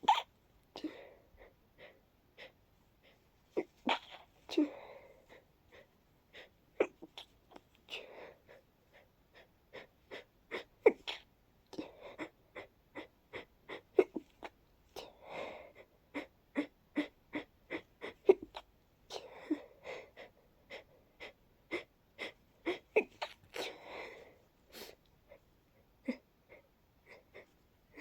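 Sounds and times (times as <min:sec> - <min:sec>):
person sneezing: 0:00.0 - 0:00.3
wheezy catching breaths: 0:00.0 - 0:28.0.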